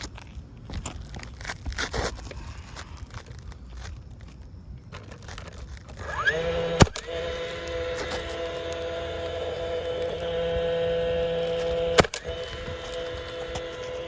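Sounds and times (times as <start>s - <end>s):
asphalt shingles crackling: 0.0s - 14.0s
motor whining: 5.9s - 14.0s
sharp loud click: 6.0s - 7.2s, 11.6s - 14.0s.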